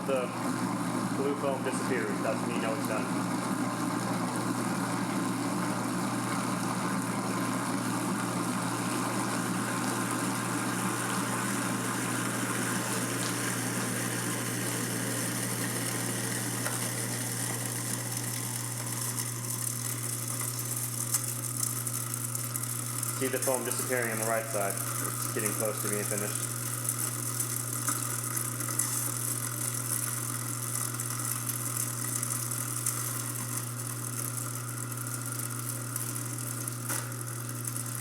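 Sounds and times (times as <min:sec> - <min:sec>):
garbage disposal motor humming: 0:00.0 - 0:38.0.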